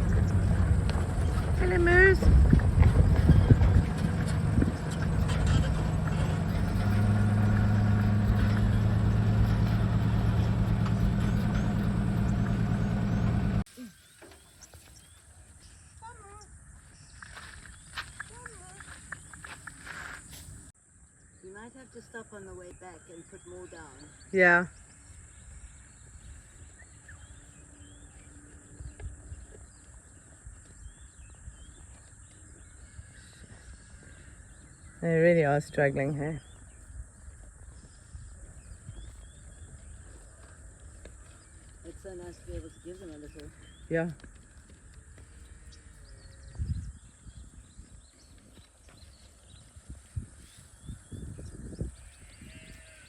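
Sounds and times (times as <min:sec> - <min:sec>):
low rumble: 0:00.0 - 0:13.7
vehicle engine humming: 0:00.0 - 0:14.6
small birds chirping: 0:00.0 - 0:20.2, 0:21.2 - 0:53.0.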